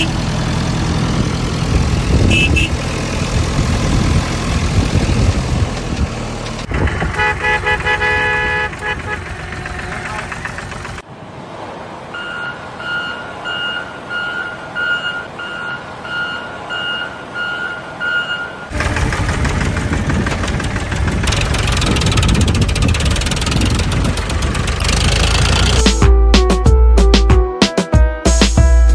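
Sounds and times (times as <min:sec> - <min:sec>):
construction vehicle engine: 0:00.0 - 0:11.1, 0:17.3 - 0:26.1
horn toot: 0:02.2 - 0:02.8, 0:06.7 - 0:10.6
reversing alarm beeping: 0:12.2 - 0:18.7.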